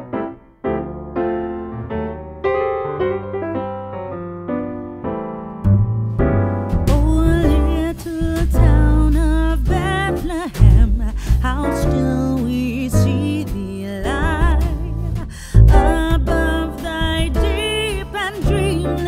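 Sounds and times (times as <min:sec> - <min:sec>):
solo piano notes: 0:00.0 - 0:19.0
bass and drums: 0:05.7 - 0:19.0
person singing: 0:06.9 - 0:19.0.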